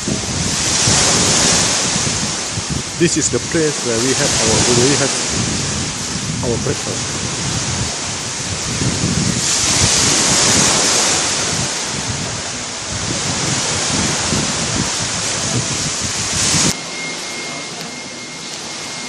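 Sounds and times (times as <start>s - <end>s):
sea waves washing: 0.0s - 19.0s
wind buffeting microphone: 0.0s - 19.0s
faint steady high tone: 16.4s - 19.0s.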